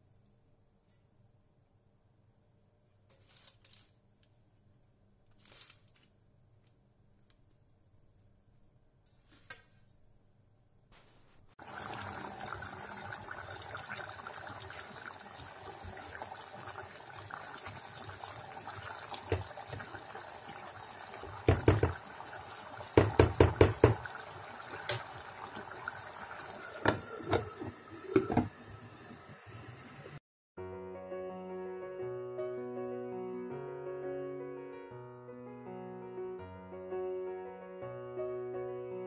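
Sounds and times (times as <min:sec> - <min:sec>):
tap water running into sink: 0:11.6 - 0:30.2
objects knocking and clattering: 0:21.4 - 0:22.0, 0:23.0 - 0:24.2.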